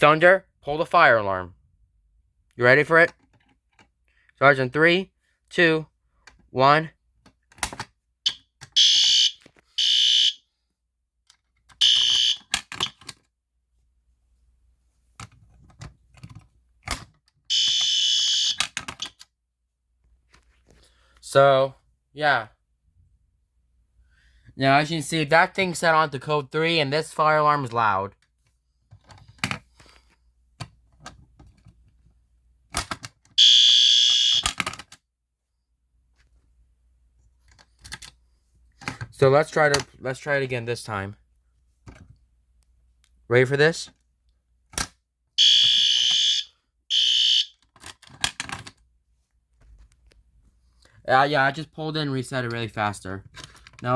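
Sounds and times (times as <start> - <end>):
fire alarm horn blasts: 8.8 - 10.4, 11.8 - 12.5, 17.5 - 18.6, 33.4 - 34.6, 45.4 - 47.6.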